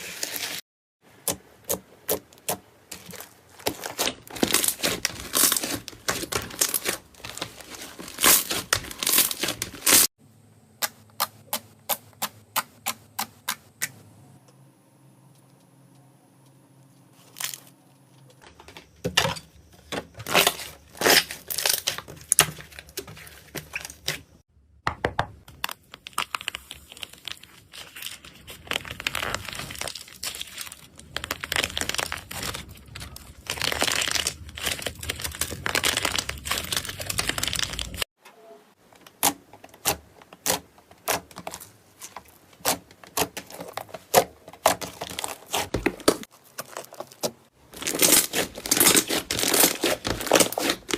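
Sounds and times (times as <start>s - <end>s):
slime crackling and popping: 3.0s - 10.1s, 25.5s - 38.0s, 42.6s - 50.9s.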